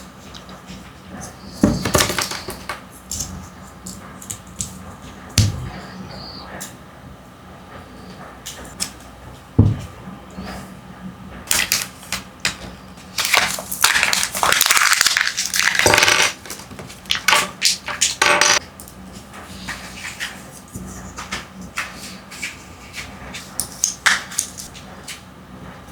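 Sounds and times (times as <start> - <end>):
packaging crinkling: 13.1 - 18.1.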